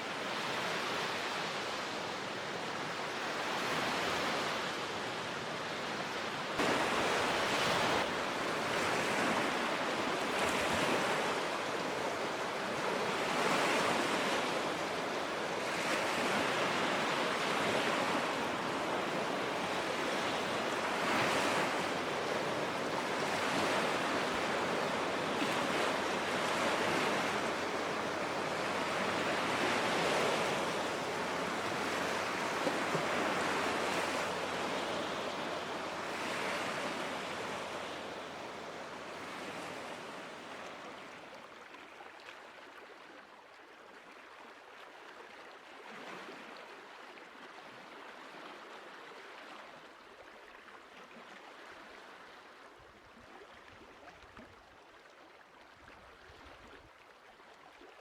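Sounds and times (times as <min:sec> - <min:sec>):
lake waves washing in: 0:00.0 - 0:43.2.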